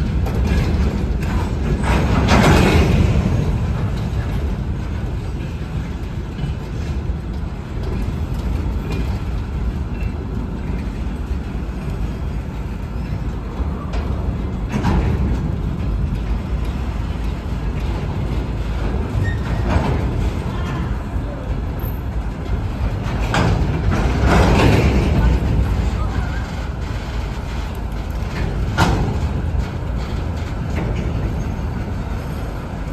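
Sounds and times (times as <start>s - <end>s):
diesel locomotive engine rumble: 0.0s - 32.9s.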